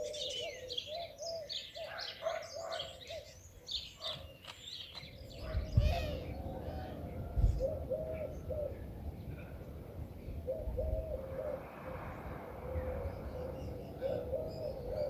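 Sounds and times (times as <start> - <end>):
dove cooing: 0.0 - 3.3, 5.4 - 11.9, 12.6 - 15.0
small birds chirping: 0.0 - 7.6.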